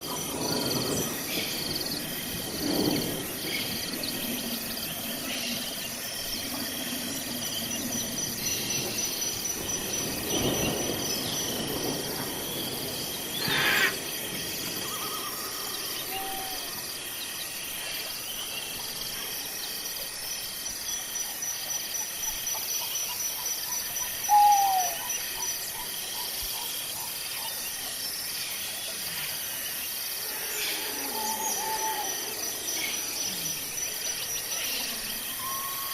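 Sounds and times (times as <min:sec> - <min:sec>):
insects chirping: 0:00.0 - 0:35.9.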